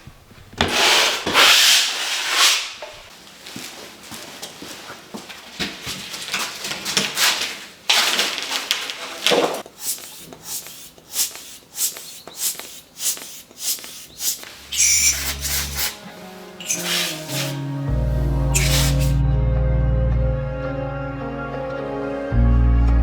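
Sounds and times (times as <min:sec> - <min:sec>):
short scraping strokes: 0:09.6 - 0:16.0, 0:16.6 - 0:19.2.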